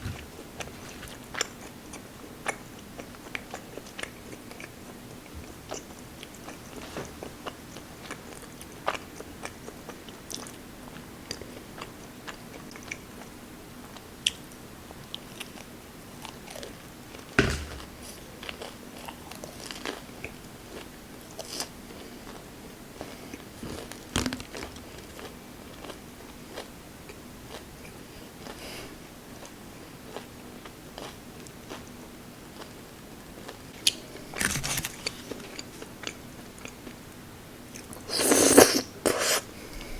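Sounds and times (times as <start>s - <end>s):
sharp knocks: 17.4s - 18.2s
person chewing crunchy food: 17.7s - 28.6s.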